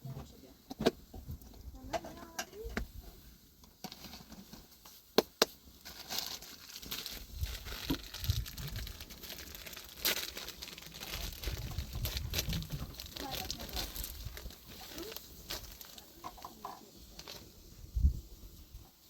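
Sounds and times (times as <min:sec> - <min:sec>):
crinkling rustling handling: 0:03.8 - 0:17.7.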